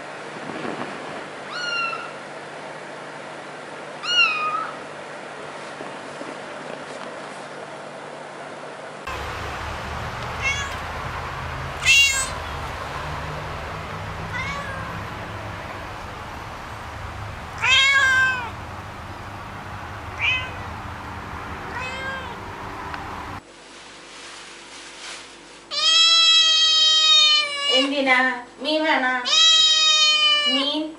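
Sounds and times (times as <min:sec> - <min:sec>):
cat meowing: 0:01.5 - 0:02.2, 0:04.0 - 0:04.8, 0:10.0 - 0:23.4, 0:25.7 - 0:27.9, 0:29.2 - 0:30.7
steady low hum: 0:09.1 - 0:23.4.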